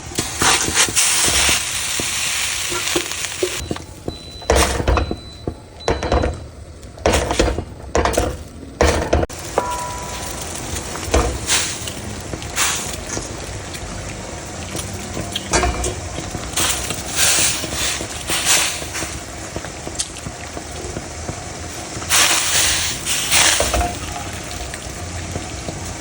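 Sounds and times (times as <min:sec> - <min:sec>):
food sizzling in hot oil: 0:00.0 - 0:05.2, 0:09.2 - 0:26.0
spatula scraping a pan: 0:00.4 - 0:03.6.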